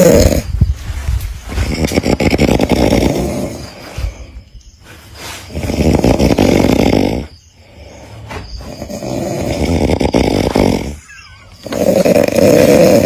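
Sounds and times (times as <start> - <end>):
person snoring loudly: 0.0 - 0.5, 1.6 - 3.8, 5.5 - 7.9, 8.7 - 13.0
quiet breathing: 7.2 - 9.0.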